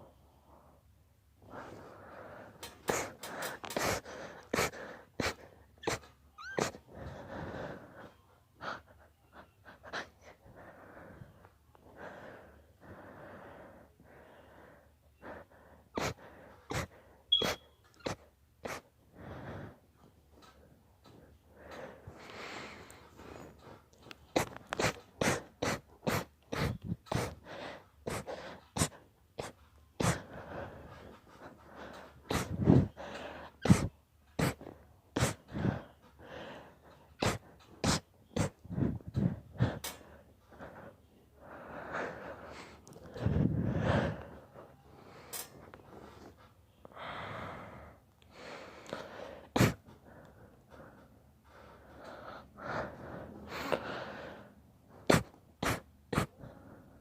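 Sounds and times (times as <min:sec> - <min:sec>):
noisy breaths: 0:00.0 - 0:57.0
person sneezing: 0:04.6 - 0:06.8, 0:32.3 - 0:32.9, 0:33.6 - 0:34.6, 0:35.2 - 0:35.4, 0:37.2 - 0:38.6, 0:49.6 - 0:49.8, 0:55.1 - 0:56.4.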